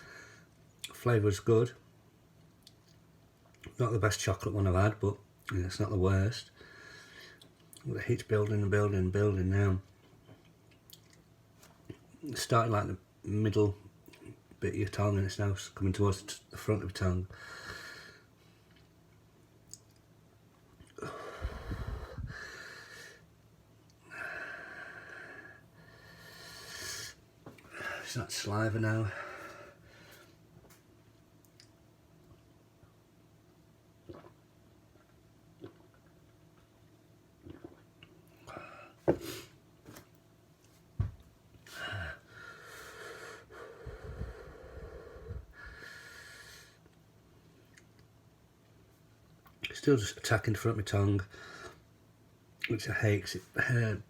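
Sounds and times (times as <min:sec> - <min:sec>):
man breathing hard through mouth: 0:21.0 - 0:23.2, 0:41.7 - 0:46.8.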